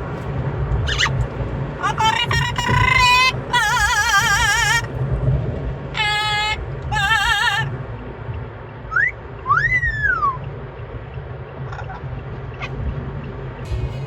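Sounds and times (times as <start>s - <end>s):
car low rumble: 0.0s - 14.0s
parrot whistling: 0.9s - 1.2s, 1.8s - 4.9s, 8.9s - 10.4s.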